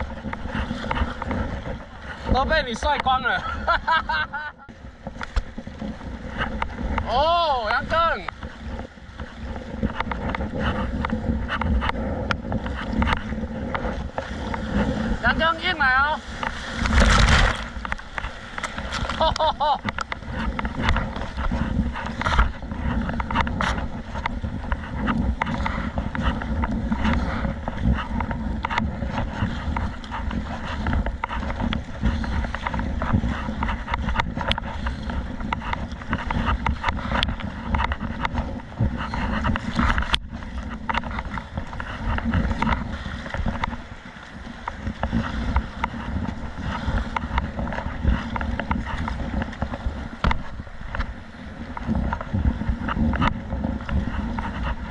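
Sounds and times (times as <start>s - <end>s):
water splashing around a kayak: 0.0s - 54.9s
wind buffeting the microphone: 0.0s - 54.9s.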